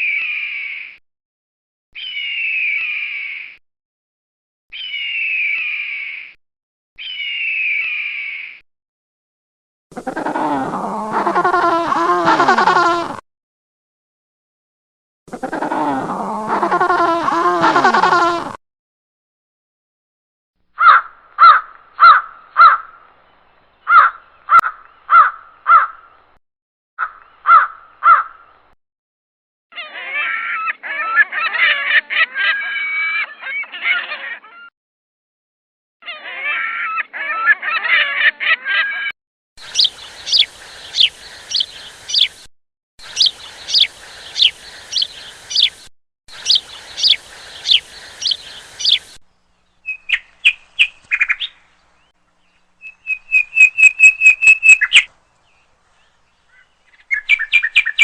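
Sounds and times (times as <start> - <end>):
sharp falling bird chirps: 2.0 - 3.6, 39.6 - 49.2, 49.8 - 51.6, 53.0 - 55.1
bird flock chatter: 39.6 - 49.2.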